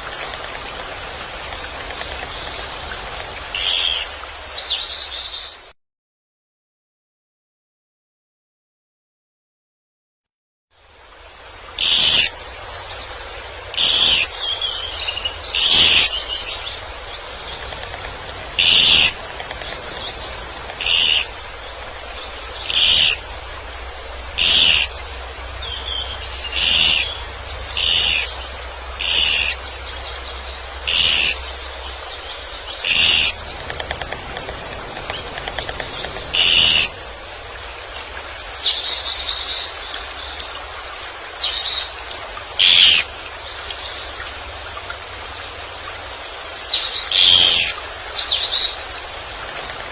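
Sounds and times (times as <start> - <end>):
woodpecker calling: 11.8 - 12.4, 13.7 - 23.3, 24.3 - 37.1, 42.5 - 43.1, 47.0 - 48.8
soft bird calls: 11.8 - 23.6, 24.2 - 44.4, 46.3 - 49.9.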